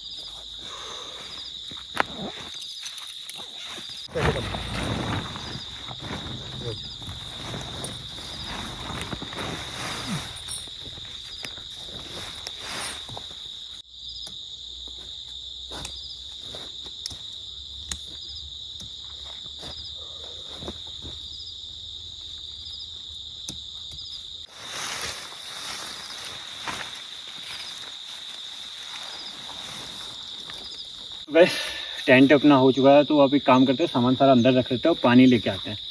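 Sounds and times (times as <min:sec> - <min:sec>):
tent poles and gear clicking: 0:00.0 - 0:14.4, 0:15.7 - 0:19.5
night insects chirring: 0:00.0 - 0:35.9.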